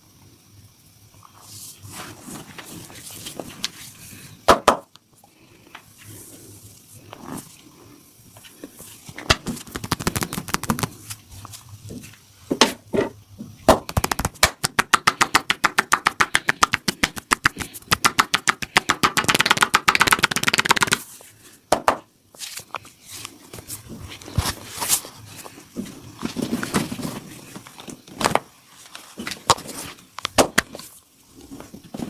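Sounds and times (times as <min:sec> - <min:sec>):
hands slapping on body: 0:09.3 - 0:11.0, 0:13.7 - 0:21.0.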